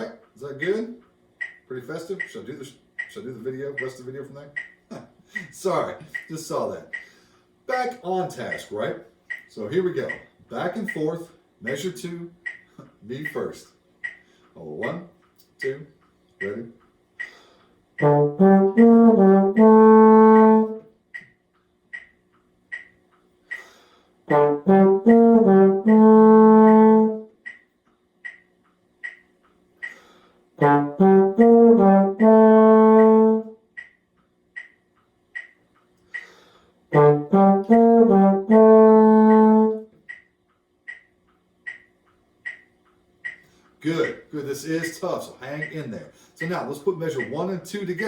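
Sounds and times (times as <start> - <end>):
metronome ticking: 0.0 - 48.0
low brass instrument phrase: 18.0 - 20.8, 24.3 - 27.3, 30.6 - 33.6, 36.9 - 39.9.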